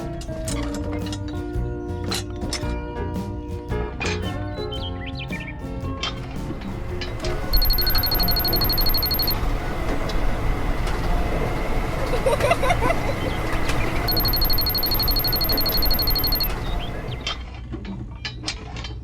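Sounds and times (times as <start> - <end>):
rapid electronic beeping: 7.1 - 9.4, 14.0 - 17.4.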